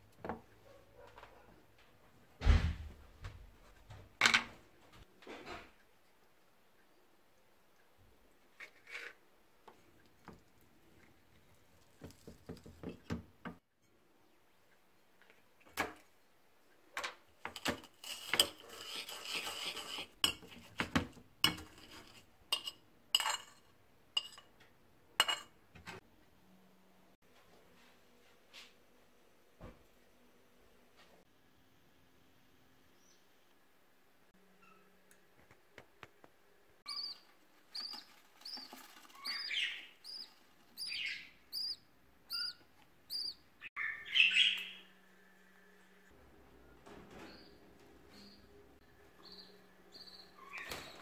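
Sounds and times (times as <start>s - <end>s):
dishes and cutlery clinking: 17.5s - 24.6s, 25.2s - 25.9s
small bird chirping: 36.9s - 45.0s, 49.1s - 51.0s
harsh bird calls: 39.2s - 44.9s.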